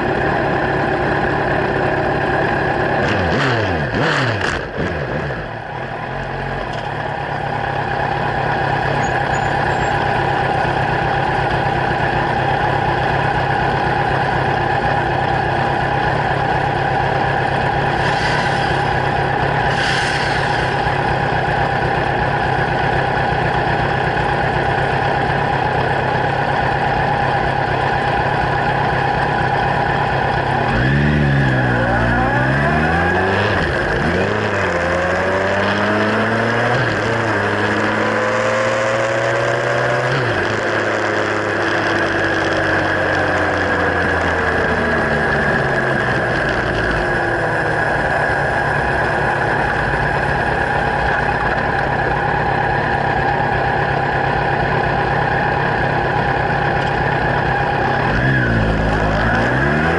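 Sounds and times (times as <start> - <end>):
motorcycle engine idling: 0.0 - 4.1, 4.7 - 17.9, 20.7 - 32.9, 41.6 - 59.3
motorcycle engine revving: 0.0 - 59.9.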